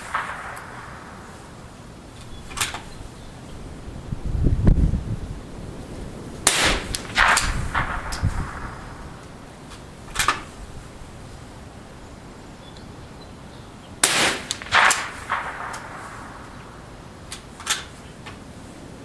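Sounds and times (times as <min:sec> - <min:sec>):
rifle shots cracking: 0:00.0 - 0:02.9, 0:06.4 - 0:10.5, 0:14.0 - 0:18.0
rifle bolt metallic clacks: 0:17.3 - 0:18.4.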